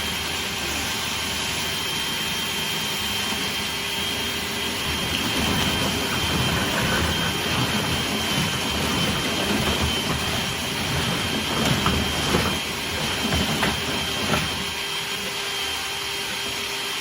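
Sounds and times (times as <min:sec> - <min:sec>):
vacuum whining air rush: 0:00.0 - 0:17.0
cleaning gear banging in duct: 0:04.7 - 0:15.0.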